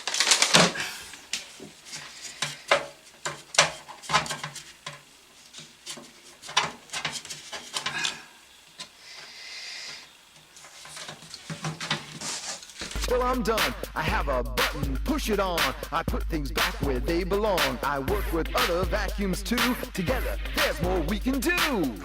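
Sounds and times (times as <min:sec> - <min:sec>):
scraping and rubbing: 0:00.0 - 0:09.0, 0:10.4 - 0:13.2.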